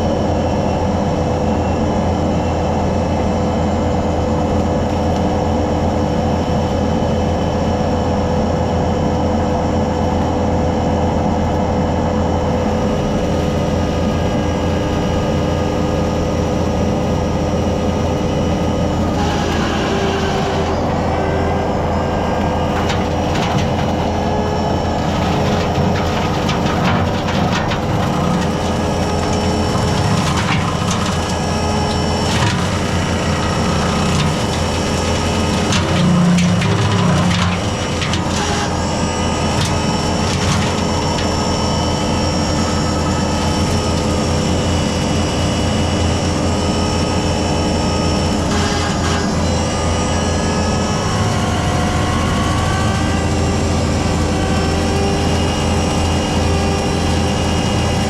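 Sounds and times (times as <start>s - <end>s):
diesel engine running: 0.0s - 58.0s
brush cutter whine: 12.1s - 58.0s.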